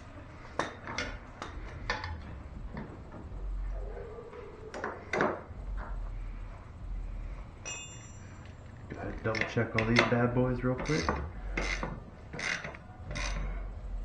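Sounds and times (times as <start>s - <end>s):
tools being handled: 7.6s - 13.6s.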